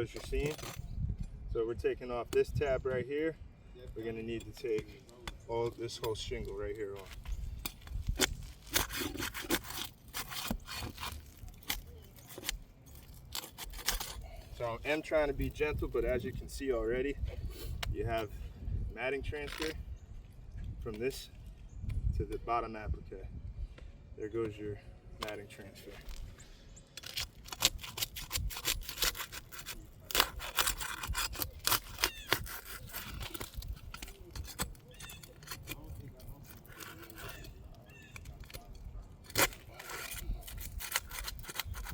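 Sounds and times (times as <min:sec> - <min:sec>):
shingle cracking as it tears: 0:00.0 - 0:00.9, 0:04.5 - 0:16.3, 0:19.2 - 0:19.8, 0:25.2 - 0:41.9
shingle scraping and rubbing: 0:00.0 - 0:01.0, 0:03.9 - 0:21.6, 0:24.4 - 0:41.9.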